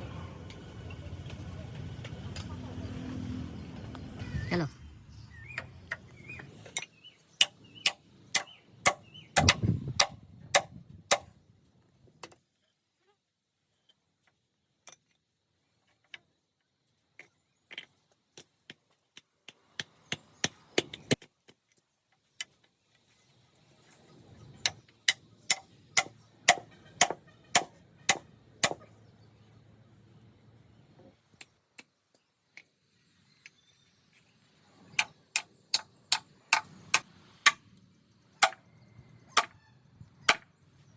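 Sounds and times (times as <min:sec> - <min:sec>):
hammer striking wood: 0:07.4 - 0:11.3, 0:24.7 - 0:28.8, 0:39.4 - 0:39.6, 0:40.3 - 0:40.5.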